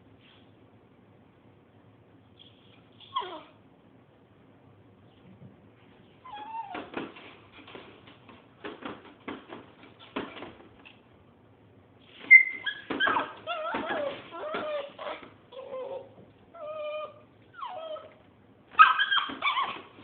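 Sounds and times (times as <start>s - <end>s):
animal crying and whimpering: 3.0s - 3.6s, 6.2s - 7.0s, 12.3s - 18.2s, 18.8s - 20.0s.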